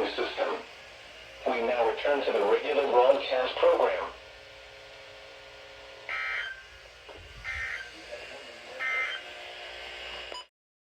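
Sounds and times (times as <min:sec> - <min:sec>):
two-tone digital screeches: 0:06.1 - 0:06.6, 0:07.5 - 0:07.9, 0:08.8 - 0:09.3.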